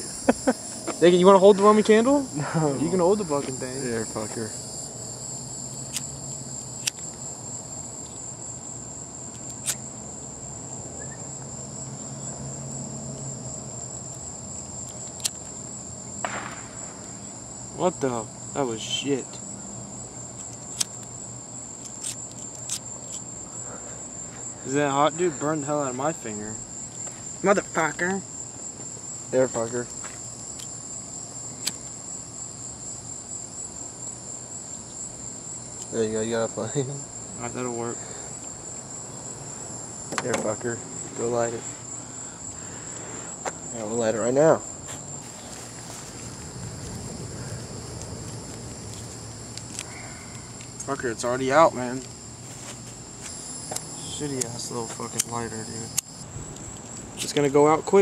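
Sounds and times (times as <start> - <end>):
crickets chirping: 0.0 - 58.0
sharp click: 9.4 - 9.8, 53.7 - 56.2
short sharp pops: 16.2 - 16.9.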